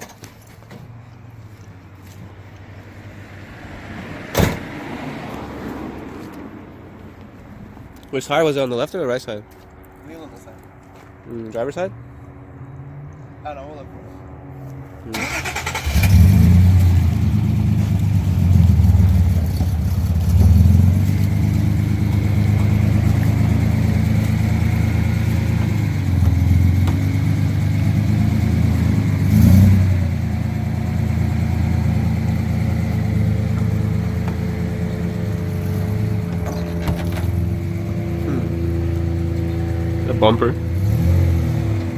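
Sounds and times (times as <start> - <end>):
car engine idling: 15.1 - 41.9.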